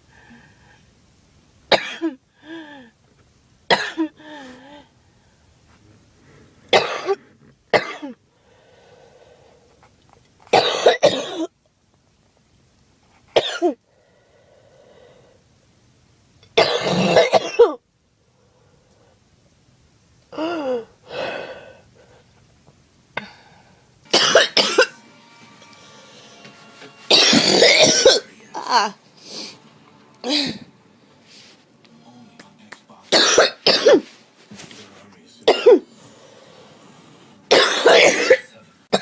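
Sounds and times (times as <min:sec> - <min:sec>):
girl coughing: 0:01.7 - 0:02.2, 0:03.7 - 0:04.1, 0:06.7 - 0:08.2, 0:10.6 - 0:11.5, 0:13.4 - 0:13.8, 0:16.6 - 0:17.8, 0:24.1 - 0:24.9, 0:27.1 - 0:29.0, 0:33.2 - 0:34.1, 0:35.5 - 0:35.8, 0:37.5 - 0:39.0.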